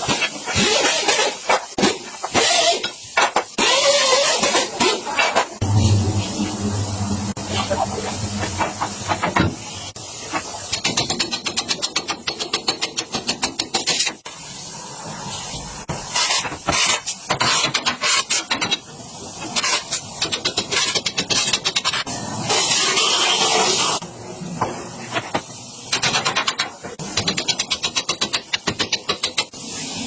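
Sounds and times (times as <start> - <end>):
pneumatic tool air hissing: 0.1 - 4.8.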